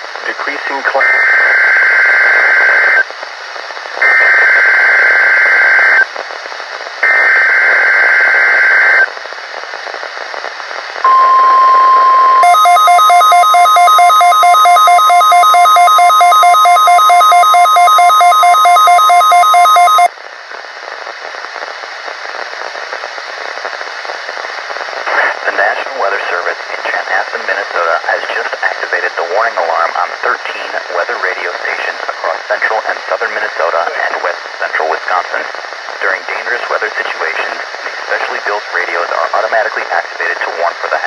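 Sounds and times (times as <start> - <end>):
radio hiss: 0.0 - 41.0
digital data bursts: 11.1 - 20.1
warning alarm tone: 11.1 - 20.1.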